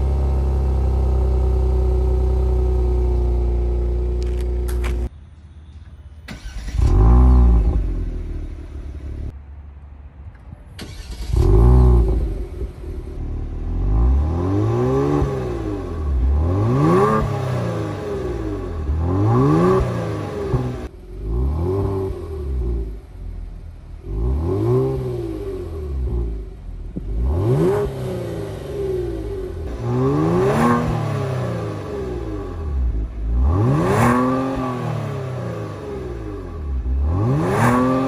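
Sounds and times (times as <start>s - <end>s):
car engine revving: 10.8s - 38.0s.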